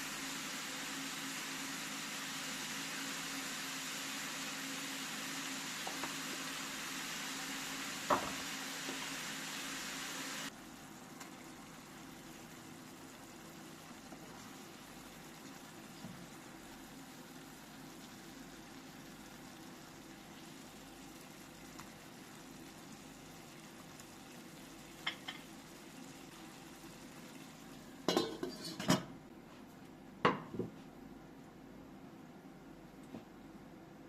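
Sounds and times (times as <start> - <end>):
dishes and utensils clinking: 28.1 - 29.1.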